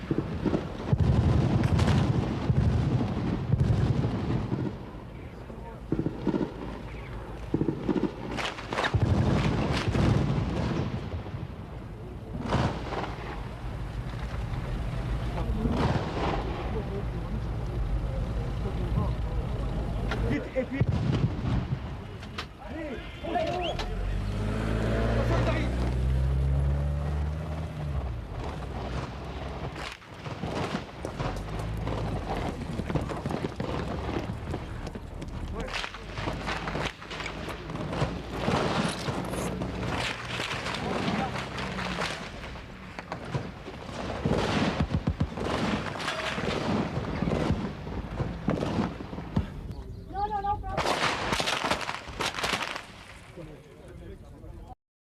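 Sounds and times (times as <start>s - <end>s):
gunfire cracks: 5.9s - 11.0s, 15.6s - 17.0s, 35.5s - 49.6s, 50.8s - 53.3s
low rumble: 10.1s - 22.2s
vehicle engine: 12.0s - 20.7s, 23.6s - 50.6s.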